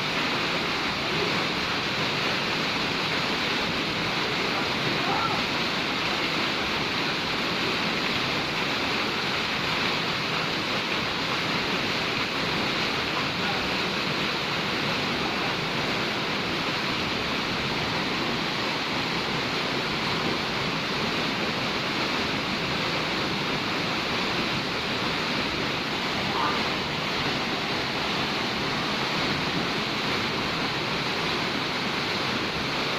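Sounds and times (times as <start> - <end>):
waterfall rushing: 0.0 - 32.9.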